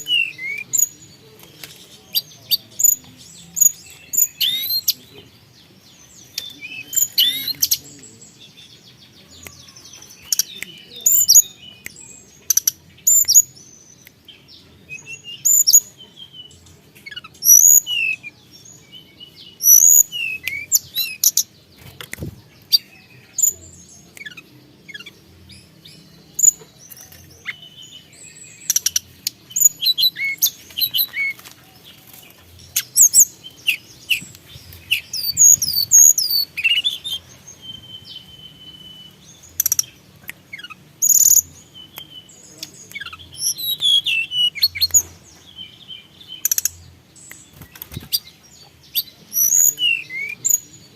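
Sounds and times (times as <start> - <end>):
bird singing high whistles and chirps: 0.0 - 1.0, 14.9 - 16.5, 17.3 - 21.5, 27.4 - 31.4, 32.8 - 50.9.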